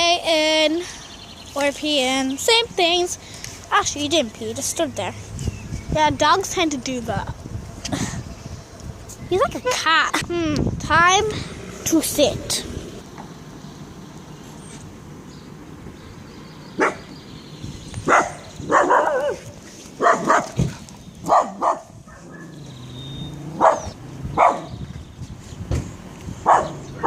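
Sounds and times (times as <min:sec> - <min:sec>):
small dog yapping: 0:18.1 - 0:20.6, 0:23.5 - 0:24.7.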